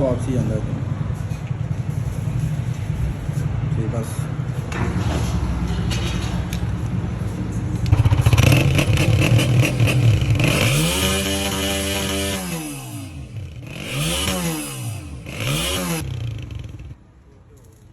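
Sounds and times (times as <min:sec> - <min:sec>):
motorcycle engine revving: 0:07.9 - 0:17.0.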